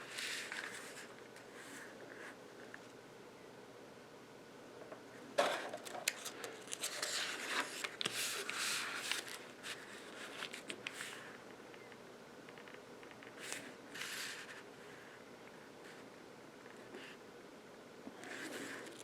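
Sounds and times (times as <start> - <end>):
paper pages rustling: 0.0 - 1.2, 5.8 - 11.3.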